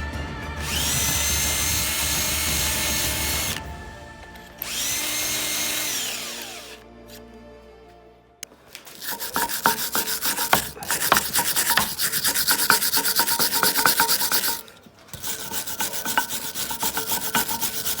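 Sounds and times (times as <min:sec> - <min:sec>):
wire brush scrubbing metal: 0:08.8 - 0:18.0.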